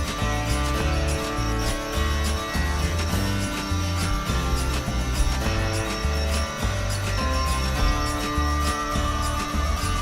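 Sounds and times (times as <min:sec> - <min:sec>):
background music with beat: 0:00.0 - 0:10.0
bass line: 0:00.0 - 0:10.0
plucked guitar-like notes: 0:00.0 - 0:10.0.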